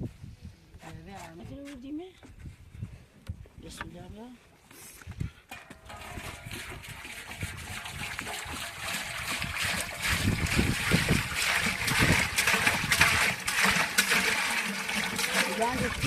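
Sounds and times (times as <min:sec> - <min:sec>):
water running and splashing: 0:05.8 - 0:16.0.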